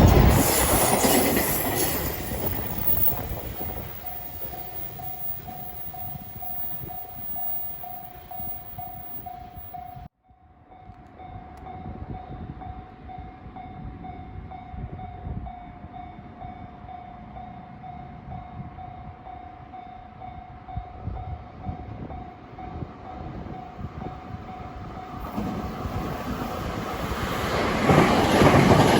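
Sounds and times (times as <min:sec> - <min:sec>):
low rumble of approaching train: 0:00.0 - 0:28.9
level crossing warning bell: 0:00.2 - 0:10.1.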